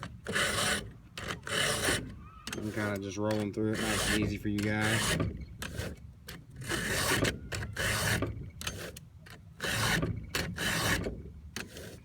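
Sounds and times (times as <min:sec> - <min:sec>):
file rasping on chain: 0:00.0 - 0:06.0, 0:06.6 - 0:09.0, 0:09.6 - 0:12.0.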